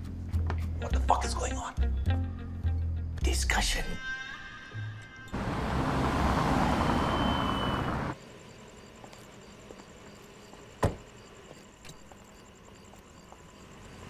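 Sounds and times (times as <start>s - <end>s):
road traffic noise: 5.3s - 11.0s.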